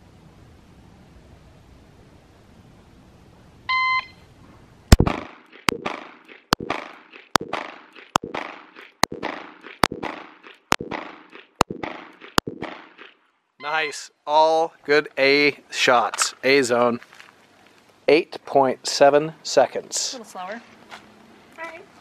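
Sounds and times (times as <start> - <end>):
shot timer beep: 3.7 - 4.2
pistol shots: 4.9 - 13.2.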